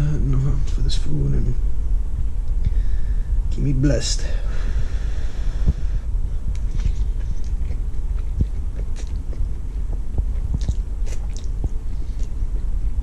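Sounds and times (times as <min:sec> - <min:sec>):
low rumble: 0:00.0 - 0:13.0
person chewing food: 0:06.5 - 0:13.0.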